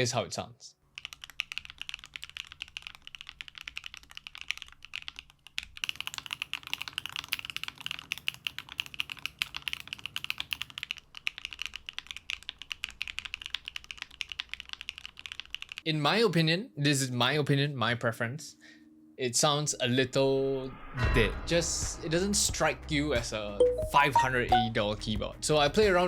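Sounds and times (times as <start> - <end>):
mechanical keyboard typing: 0.9 - 15.8.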